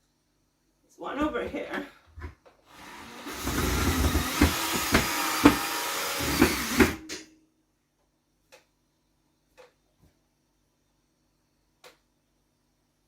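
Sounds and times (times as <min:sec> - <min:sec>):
power drill driving screw: 0:02.7 - 0:07.2.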